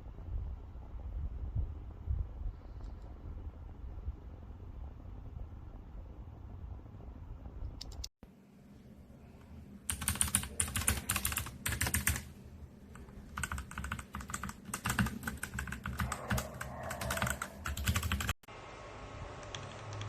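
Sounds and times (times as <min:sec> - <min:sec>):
mechanical keyboard typing: 0:09.9 - 0:12.3, 0:12.9 - 0:18.4.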